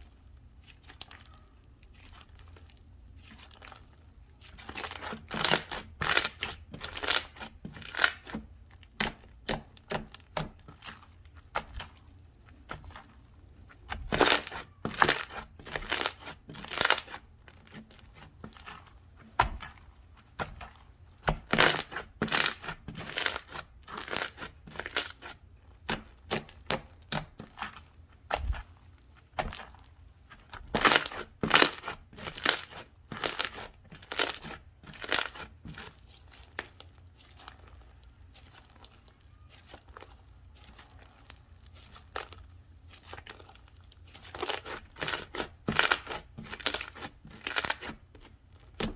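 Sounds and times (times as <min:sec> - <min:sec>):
slime squished by hand: 0:00.0 - 0:48.9
air pockets popping in slime: 0:13.9 - 0:17.8, 0:44.3 - 0:48.0.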